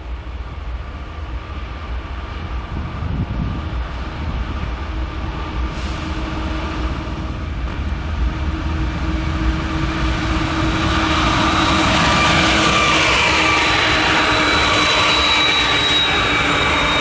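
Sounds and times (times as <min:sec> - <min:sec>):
train rumbling on rails: 0:00.0 - 0:17.0
thin whining tones: 0:08.7 - 0:17.0.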